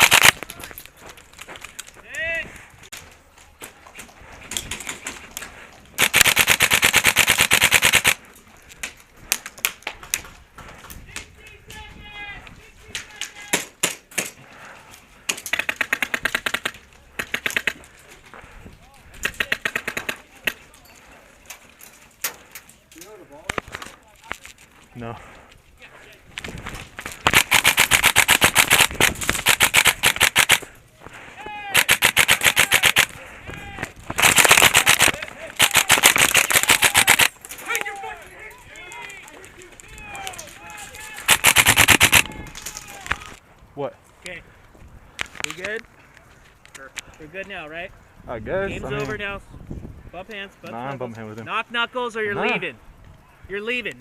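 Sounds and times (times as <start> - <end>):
airsoft gun full-auto burst: 0.0 - 0.3, 6.0 - 8.2, 27.3 - 30.7, 31.8 - 33.1, 34.2 - 37.3, 41.3 - 42.2.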